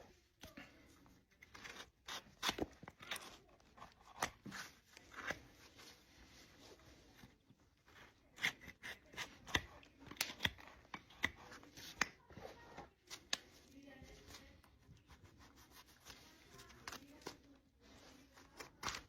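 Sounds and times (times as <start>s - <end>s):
hoof being cut with snips: 8.3s - 12.2s.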